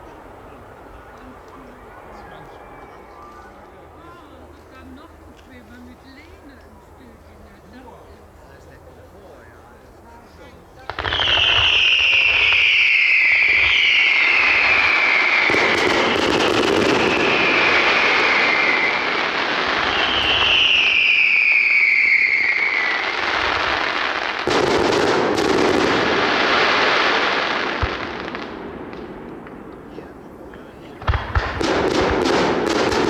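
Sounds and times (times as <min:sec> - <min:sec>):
fireworks crackling and hissing: 0:10.3 - 0:33.0
firework bangs: 0:10.8 - 0:33.0
falling firework whistles: 0:10.9 - 0:28.0.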